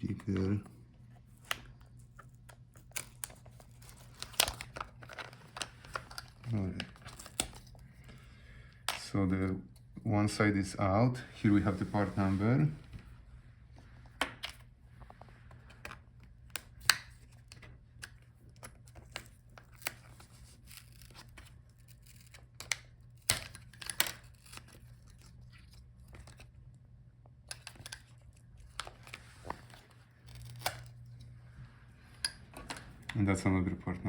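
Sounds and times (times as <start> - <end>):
plastic speaker clicks and crinkles: 1.4 - 7.8.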